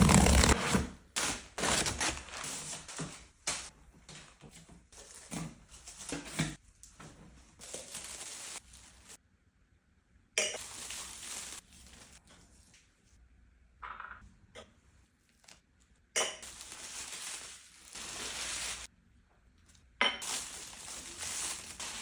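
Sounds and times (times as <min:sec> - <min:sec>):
packaging rustling: 0:16.4 - 0:18.9, 0:20.2 - 0:22.0.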